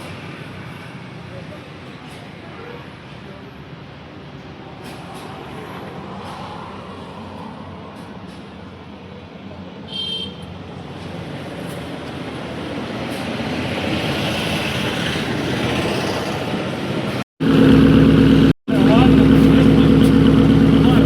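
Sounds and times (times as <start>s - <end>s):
vehicle tyre and engine noise: 10.8s - 21.0s
loud steady pitched hum: 17.4s - 21.0s.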